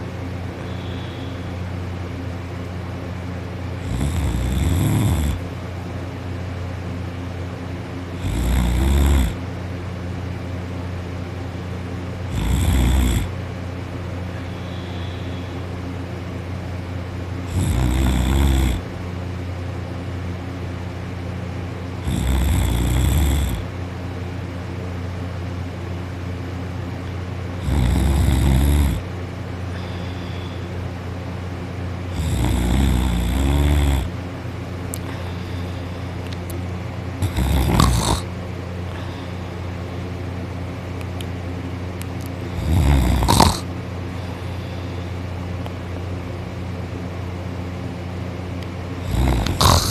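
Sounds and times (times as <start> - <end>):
steady low hum: 0.0 - 49.9
person snoring loudly: 3.8 - 5.5, 8.2 - 9.4, 12.3 - 13.4, 17.4 - 18.9, 22.0 - 23.7, 27.6 - 29.1, 32.1 - 34.2, 37.2 - 38.3, 42.5 - 43.7, 49.0 - 49.9.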